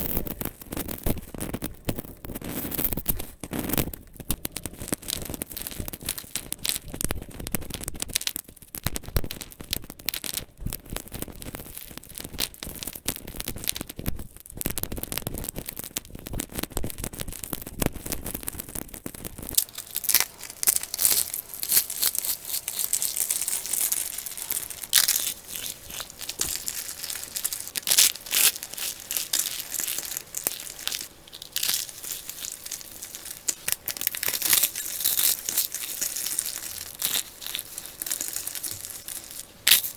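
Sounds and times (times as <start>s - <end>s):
dry material crushed and crunching: 0.0s - 39.9s.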